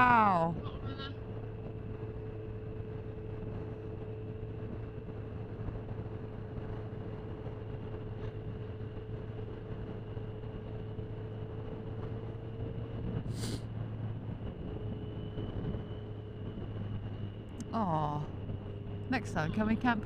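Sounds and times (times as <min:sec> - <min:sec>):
road and wind noise: 0:00.0 - 0:20.0
short hiss: 0:13.4 - 0:13.6.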